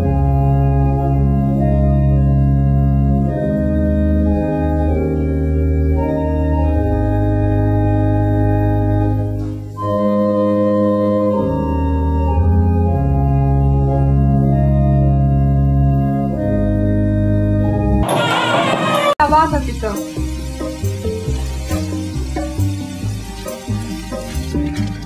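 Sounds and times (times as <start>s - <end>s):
organ playing slow chords: 0.0s - 25.0s.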